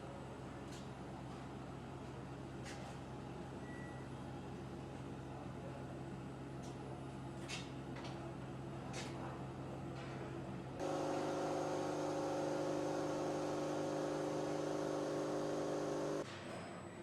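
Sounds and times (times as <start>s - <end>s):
hiss: 10.8s - 16.2s
machine hum with tones: 10.8s - 16.2s.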